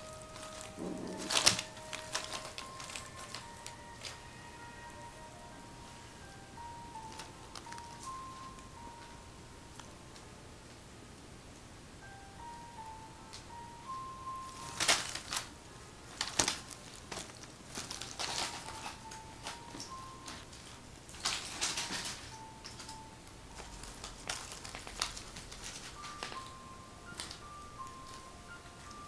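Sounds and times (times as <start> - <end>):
kittens scuffling: 0.0 - 4.2, 14.5 - 15.5, 16.1 - 23.0, 23.6 - 26.5
background music of high notes: 0.0 - 10.6, 12.0 - 29.0.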